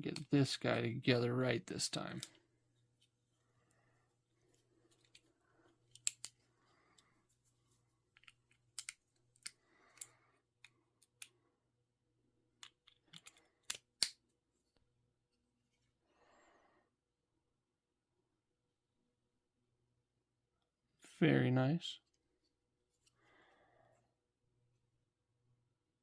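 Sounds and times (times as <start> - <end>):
hard plastic parts clicking: 5.9 - 7.1, 8.1 - 11.4, 12.6 - 14.2.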